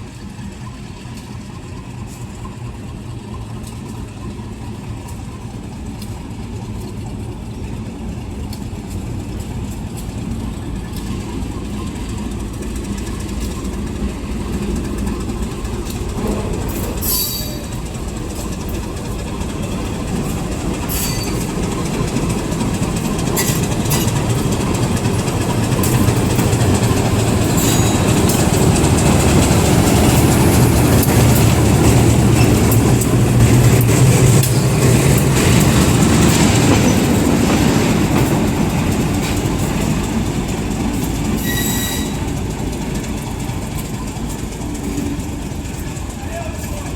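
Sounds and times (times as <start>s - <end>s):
diesel train engine rumble: 0.0s - 46.9s
wheels clicking over rails: 0.2s - 46.9s
wheel squeals: 15.9s - 18.6s, 19.2s - 22.3s, 23.2s - 33.0s, 40.9s - 45.2s.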